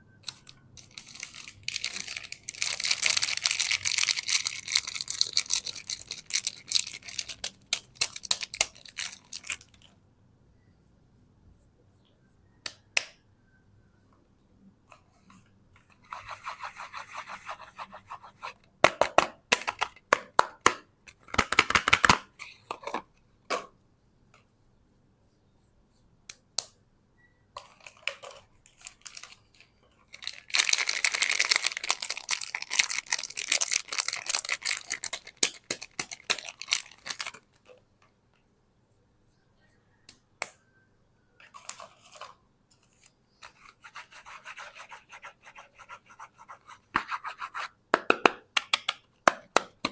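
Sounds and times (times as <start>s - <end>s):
wrappers crinkling and tearing: 0.3s - 9.8s, 28.7s - 29.5s, 30.1s - 37.4s.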